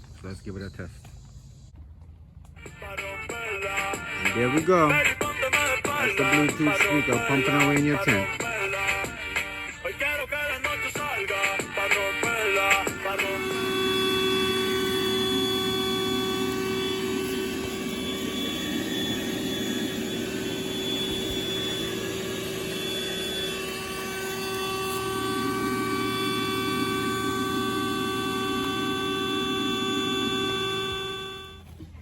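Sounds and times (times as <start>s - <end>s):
music with held chords: 2.6s - 31.6s
steady low hum: 10.9s - 32.0s.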